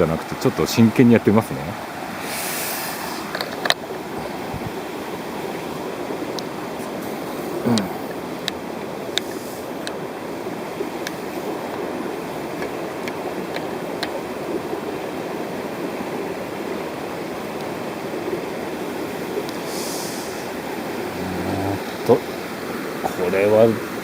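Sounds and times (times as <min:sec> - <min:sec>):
stream water rushing: 0:00.0 - 0:24.0
brief hiss: 0:02.2 - 0:03.3.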